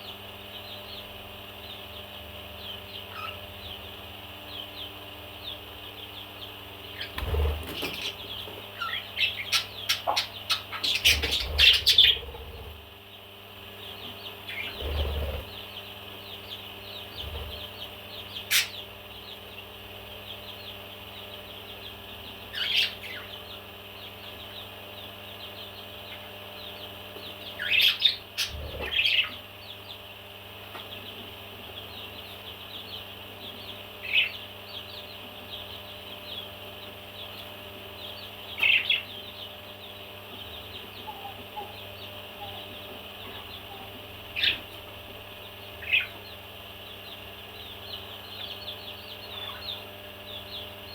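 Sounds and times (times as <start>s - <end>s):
parrots chirping: 2.6s - 3.5s, 6.8s - 12.7s, 14.4s - 15.6s, 17.0s - 19.2s, 22.5s - 23.5s, 27.5s - 29.8s, 38.0s - 44.7s, 45.7s - 50.9s.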